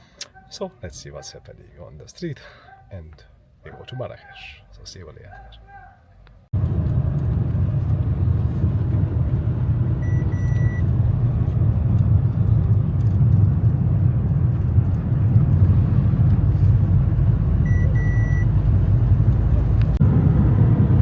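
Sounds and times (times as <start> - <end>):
traffic engine rumble: 0.0 - 21.0.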